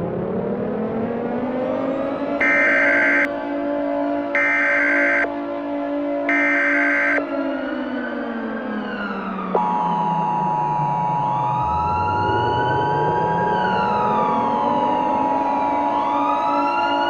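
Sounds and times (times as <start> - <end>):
siren wailing up and down: 0.4 - 3.4, 4.3 - 5.3, 6.3 - 17.0
harsh two-tone alert signal: 2.4 - 3.3, 4.4 - 5.3, 6.3 - 7.2.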